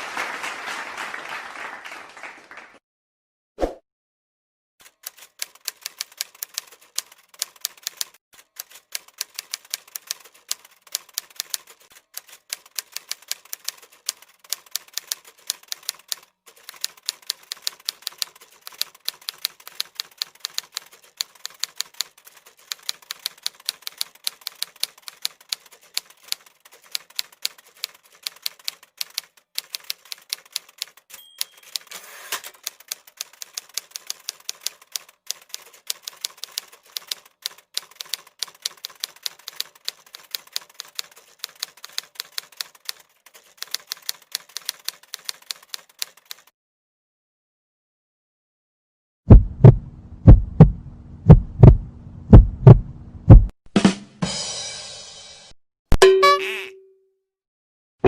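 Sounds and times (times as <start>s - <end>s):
typewriter keys clacking: 4.8s - 46.5s
typewriter bell ding: 31.1s - 32.5s.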